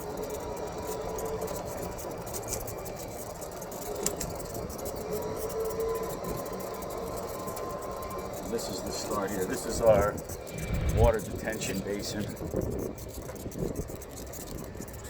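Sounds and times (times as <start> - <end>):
truck engines rumbling: 9.1 - 12.4.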